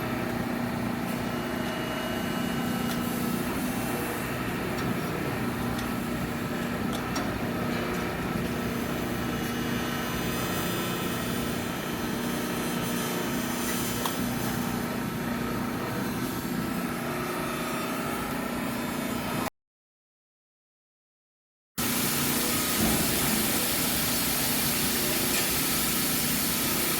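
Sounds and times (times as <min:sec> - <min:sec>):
steady machine hum: 0:00.0 - 0:19.5.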